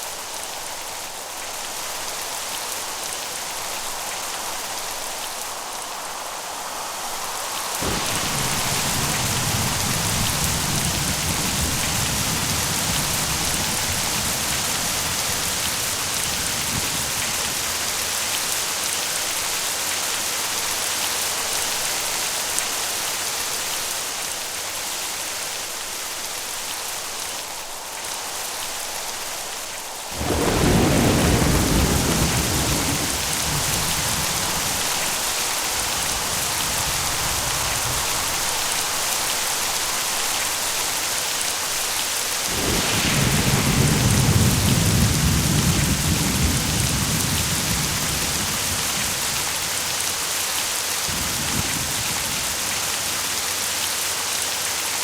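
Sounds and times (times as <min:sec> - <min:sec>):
heavy rain: 0:00.0 - 0:55.0
thunder clap rumbling: 0:07.8 - 0:18.4, 0:30.1 - 0:38.7, 0:42.4 - 0:49.9, 0:51.1 - 0:53.4.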